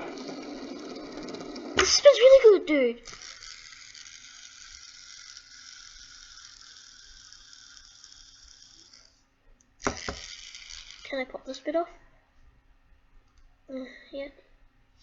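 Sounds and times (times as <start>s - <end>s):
fidget spinner clicks: 0.0s - 9.2s, 9.8s - 11.7s
fidget spinner whirring: 0.0s - 9.2s, 9.8s - 11.8s.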